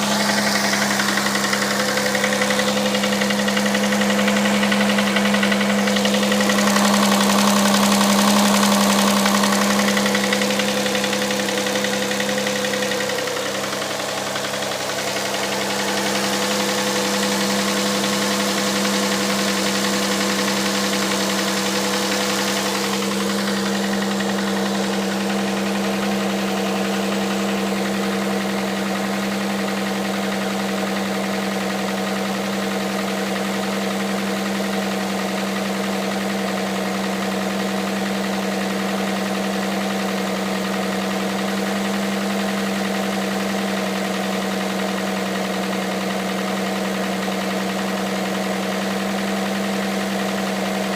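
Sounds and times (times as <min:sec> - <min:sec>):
car engine idling with knock: 0:00.0 - 0:50.9.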